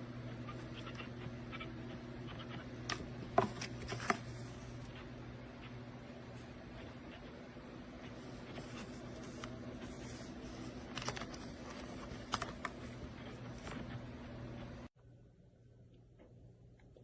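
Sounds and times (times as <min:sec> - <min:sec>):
steady low hum: 0:00.0 - 0:17.0
package rustling and scraping: 0:03.3 - 0:04.8, 0:08.2 - 0:13.9.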